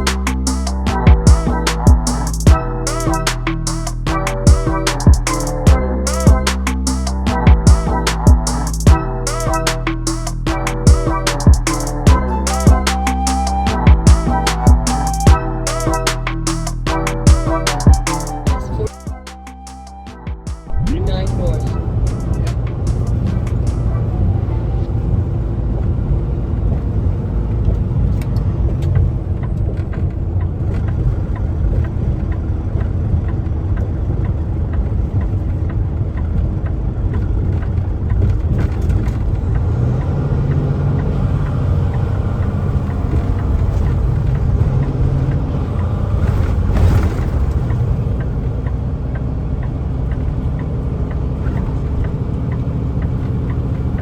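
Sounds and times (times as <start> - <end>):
truck engine drone: 0.0 - 33.2, 35.5 - 54.0
road rumble: 20.4 - 54.0.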